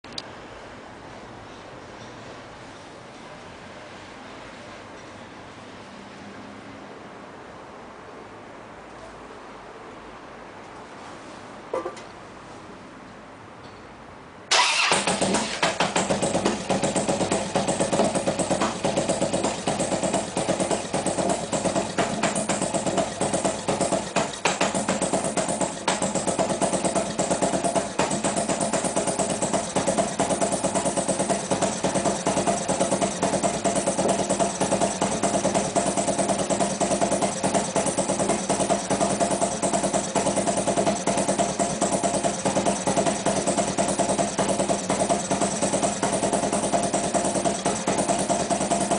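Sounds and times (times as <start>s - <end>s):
motorcycle engine starting and idling: 14.5s - 48.9s.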